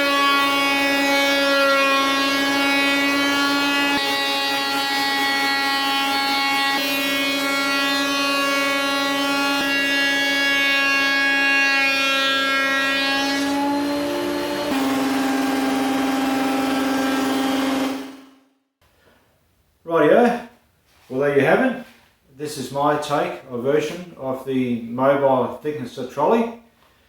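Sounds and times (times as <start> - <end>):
planer motor whine: 0.0 - 18.4.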